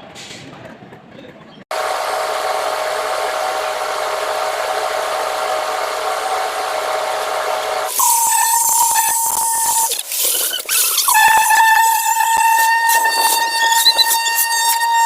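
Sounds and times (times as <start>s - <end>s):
machine motor whining: 1.7s - 15.0s
hiss: 7.9s - 14.9s.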